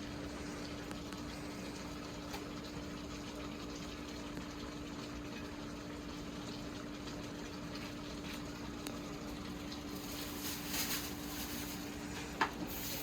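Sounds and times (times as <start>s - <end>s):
low hum with hiss: 0.0s - 13.0s.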